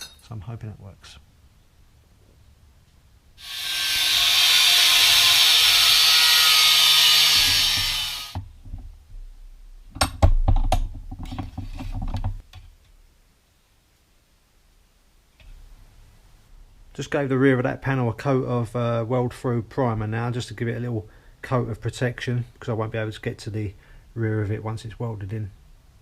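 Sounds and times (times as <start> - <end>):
handheld power tool running: 3.4 - 8.4.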